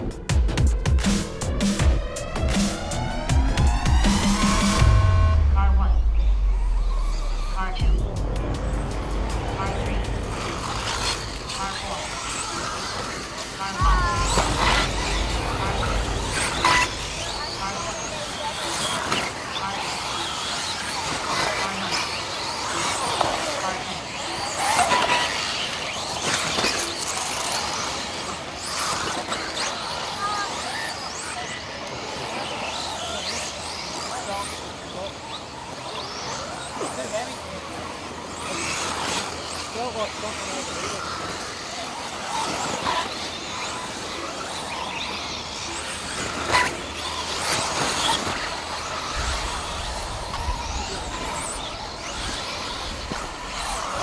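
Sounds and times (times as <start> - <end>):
steady noise: 0.0 - 18.8
rc car motors whining: 6.7 - 54.0.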